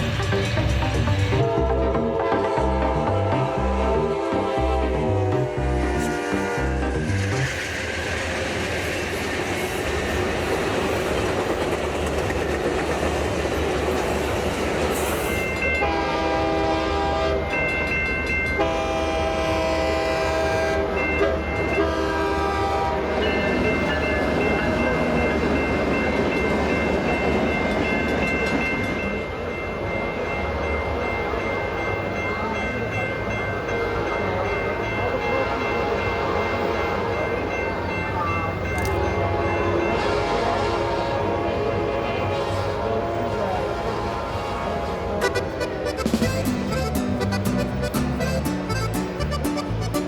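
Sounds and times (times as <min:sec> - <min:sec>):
diesel horn blasts: 0:01.3 - 0:07.1, 0:15.8 - 0:17.4, 0:18.6 - 0:21.0, 0:21.8 - 0:23.1, 0:39.2 - 0:47.4.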